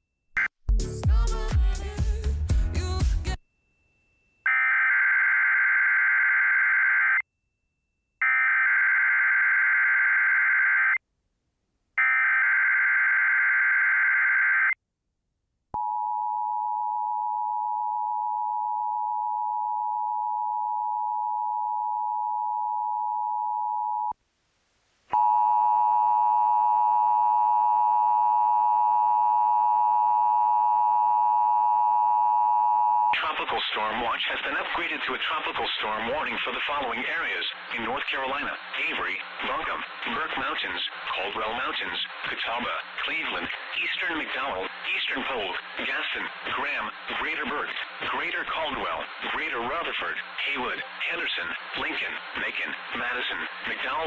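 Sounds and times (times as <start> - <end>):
harsh buzzy steady tone: 33.8 - 54.0.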